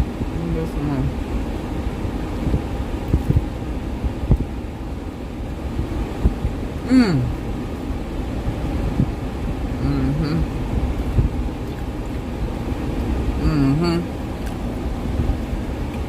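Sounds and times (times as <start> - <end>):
low rumble: 0.0 - 16.0
person humming appreciatively: 6.9 - 7.4, 9.8 - 10.5, 13.4 - 14.1.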